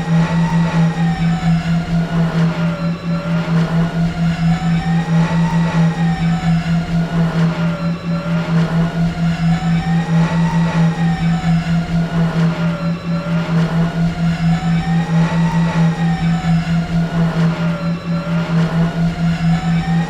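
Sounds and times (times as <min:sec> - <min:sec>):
spaceship engine hum and whine: 0:00.0 - 0:20.0.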